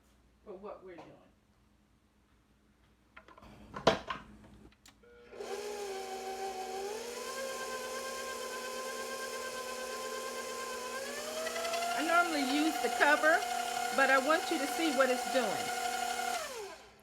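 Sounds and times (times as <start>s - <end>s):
stand mixer running: 5.4s - 17.0s.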